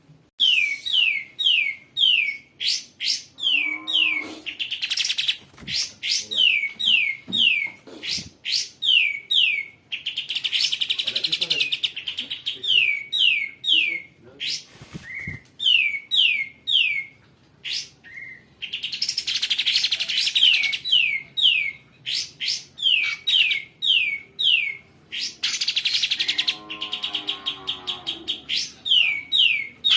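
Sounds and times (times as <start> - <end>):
songbird whistling: 0.4 - 4.2
harsh rasping bird trills: 3.1 - 5.2
lower bird call: 3.4 - 4.7.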